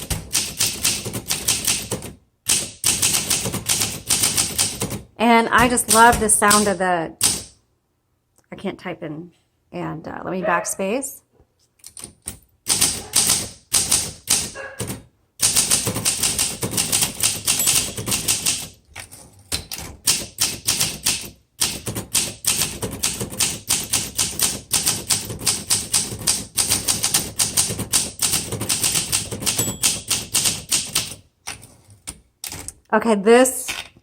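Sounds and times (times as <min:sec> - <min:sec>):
manual typewriter typing: 0:00.0 - 0:05.0, 0:05.6 - 0:07.5, 0:11.8 - 0:32.8.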